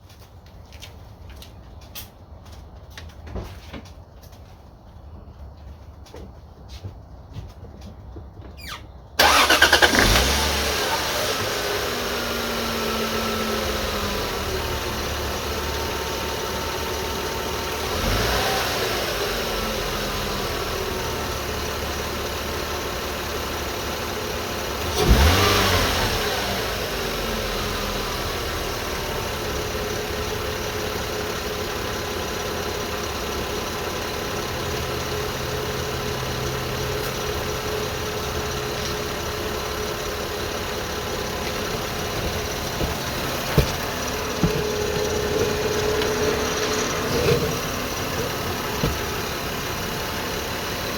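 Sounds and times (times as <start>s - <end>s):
car engine starting and idling: 8.6s - 50.9s
engine revving: 9.2s - 15.4s, 17.4s - 20.3s, 24.8s - 28.1s, 40.6s - 50.9s.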